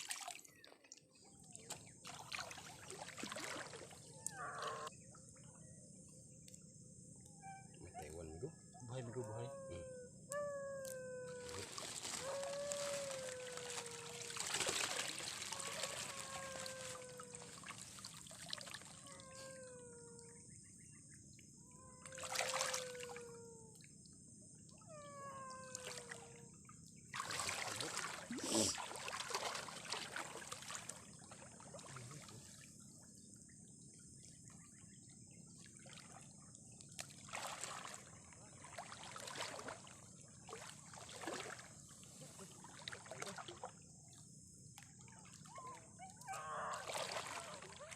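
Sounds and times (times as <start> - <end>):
water splashing and trickling: 0.0 - 5.5, 10.9 - 20.2, 21.8 - 23.4, 24.9 - 34.4, 35.6 - 43.8, 44.8 - 47.9
animal whining: 4.1 - 4.9, 7.4 - 17.6, 19.0 - 20.4, 24.8 - 26.4, 28.3 - 28.8.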